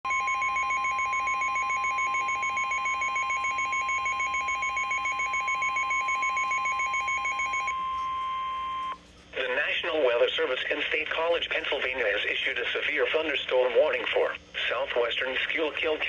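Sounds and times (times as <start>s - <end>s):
fast two-pitch beeping: 0.1s - 8.9s
steady high alarm tone: 0.1s - 9.0s.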